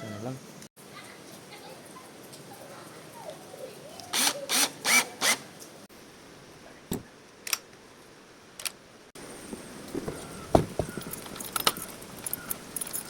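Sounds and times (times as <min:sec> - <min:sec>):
power tool bursts: 0:04.2 - 0:05.4
sharp clicks: 0:07.4 - 0:07.8, 0:08.6 - 0:08.8.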